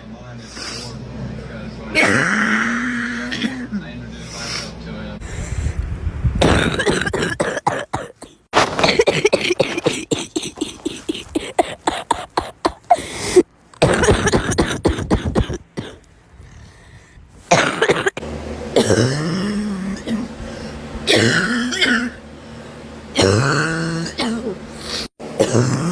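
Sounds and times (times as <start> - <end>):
people coughing: 1.9 - 3.8, 6.4 - 16.1, 17.5 - 22.2, 23.1 - 25.9.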